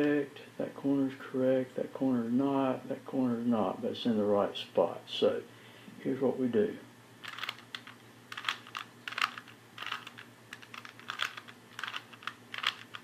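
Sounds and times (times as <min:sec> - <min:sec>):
plastic puzzle cube clicking: 0:07.3 - 0:13.0.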